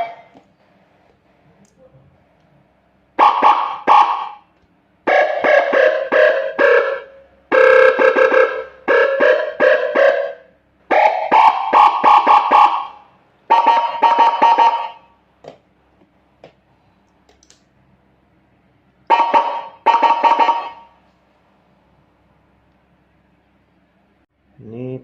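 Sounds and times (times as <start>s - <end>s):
pulsing electronic siren: 3.2s - 4.4s, 5.0s - 15.1s, 19.1s - 21.0s.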